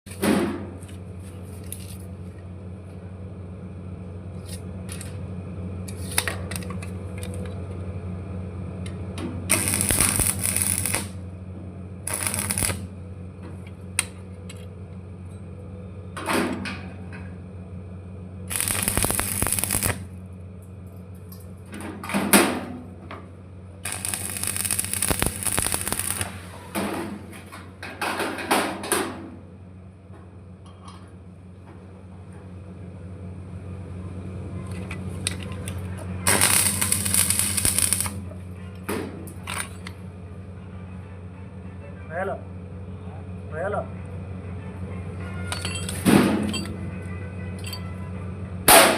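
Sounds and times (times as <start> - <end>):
low electrical hum: 0.1 - 48.9
welding arc crackling: 9.5 - 11.3, 12.0 - 12.9, 18.5 - 20.2, 23.8 - 26.8, 35.7 - 38.3.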